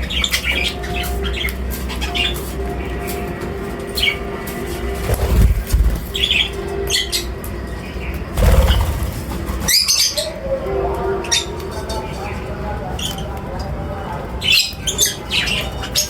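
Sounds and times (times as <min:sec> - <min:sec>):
steady low hum: 0:00.0 - 0:09.7
birds chirping: 0:00.0 - 0:10.5, 0:11.1 - 0:16.0
wings flapping: 0:04.9 - 0:06.3, 0:08.4 - 0:09.8.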